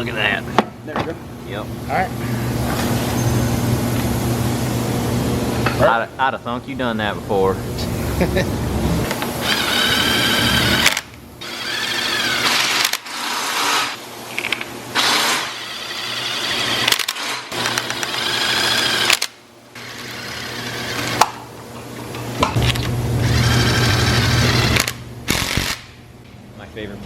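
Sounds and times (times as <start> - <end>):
power wrench whining: 9.4 - 14.0, 15.0 - 21.2, 22.6 - 26.0.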